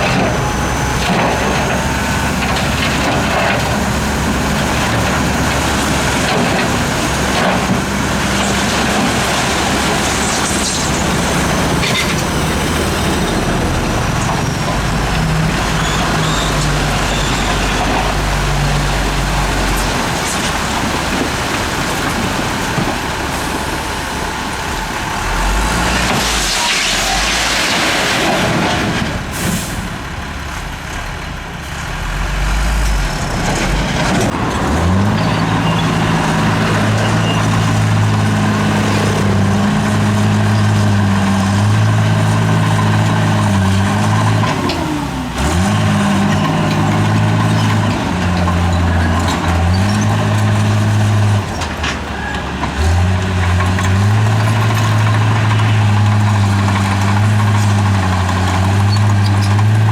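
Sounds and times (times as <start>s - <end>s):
heavy diesel engine running hard: 0.0s - 59.9s.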